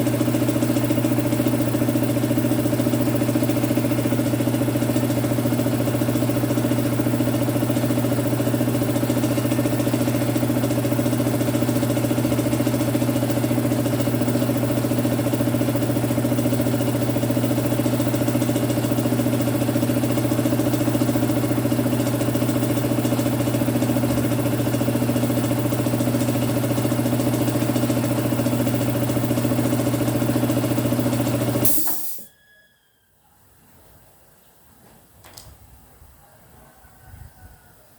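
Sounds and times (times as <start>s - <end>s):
electric compressor humming: 0.0s - 32.3s.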